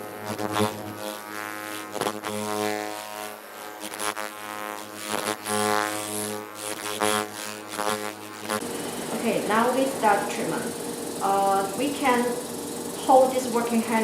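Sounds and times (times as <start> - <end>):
droning electric buzz: 0.0 - 14.0
light hissing and clicking: 8.6 - 14.0.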